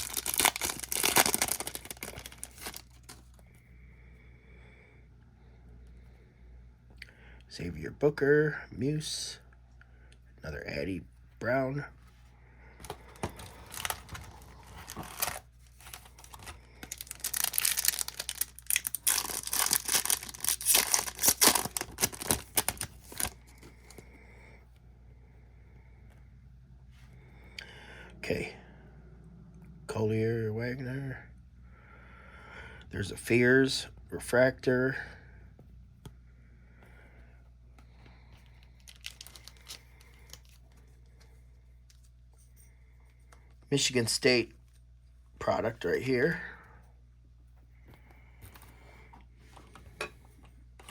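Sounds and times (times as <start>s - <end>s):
foil wrapper tearing and crinkling: 0.0s - 3.2s, 13.6s - 23.4s, 38.8s - 40.6s
trading cards rustling: 0.0s - 3.4s, 12.8s - 24.0s, 38.4s - 41.3s
low steady hum: 0.0s - 50.9s.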